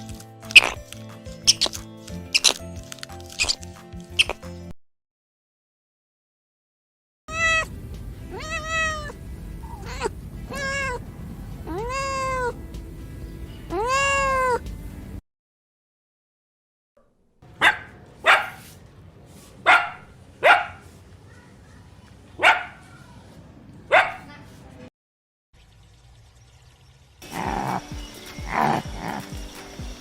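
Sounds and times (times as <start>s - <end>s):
cat meowing: 7.3s - 7.7s, 8.3s - 11.0s, 11.6s - 12.6s, 13.7s - 14.6s
dog barking: 17.6s - 18.7s, 19.6s - 20.9s, 22.4s - 23.1s, 23.9s - 24.3s.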